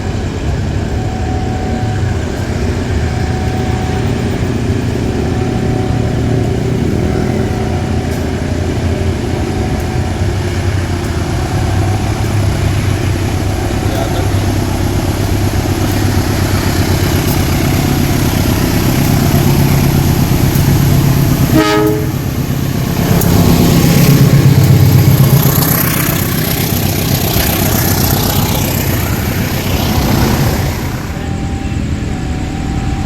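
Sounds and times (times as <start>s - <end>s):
diesel locomotive running: 0.0s - 33.0s
locomotive horn blast: 21.5s - 22.4s.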